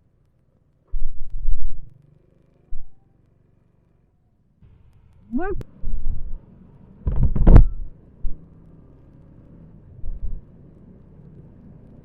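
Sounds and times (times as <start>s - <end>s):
motorcycle low rumble: 0.0s - 12.0s
wind buffeting microphone: 5.4s - 8.4s, 9.9s - 10.5s.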